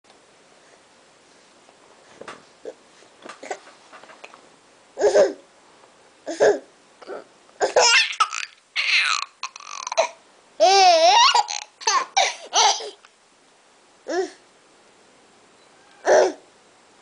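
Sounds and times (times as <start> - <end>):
baby laughing: 7.6 - 13.0
woman hiccupping: 8.2 - 10.2.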